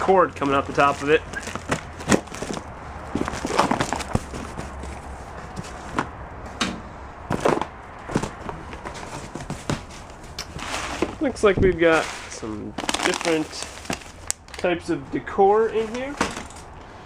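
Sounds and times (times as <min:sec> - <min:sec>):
rummaging through cardboard box: 0:00.0 - 0:06.1, 0:07.3 - 0:14.6, 0:15.6 - 0:16.6
items knocking and clunking: 0:00.4 - 0:14.7, 0:15.8 - 0:16.8.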